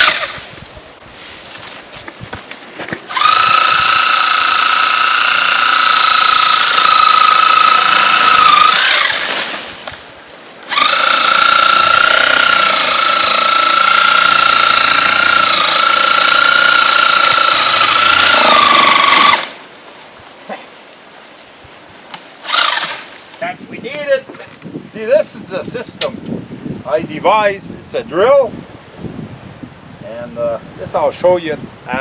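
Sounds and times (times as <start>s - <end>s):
cordless drill motor whining: 0.0s - 0.4s, 3.1s - 9.2s, 10.7s - 19.6s, 22.4s - 23.0s.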